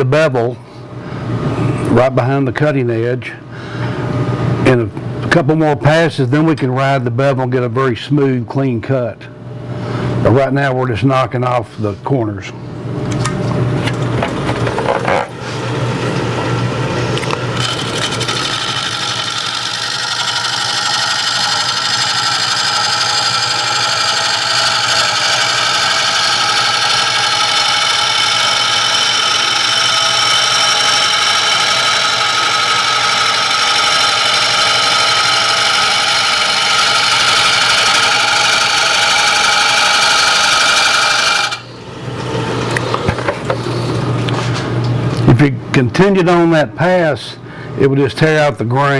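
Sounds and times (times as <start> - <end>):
wood lathe spinning: 16.6 - 42.9
gouge cutting wood: 17.5 - 41.6.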